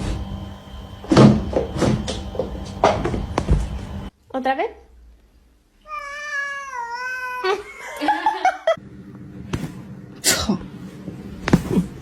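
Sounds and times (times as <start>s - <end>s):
cat meowing: 5.8s - 7.7s.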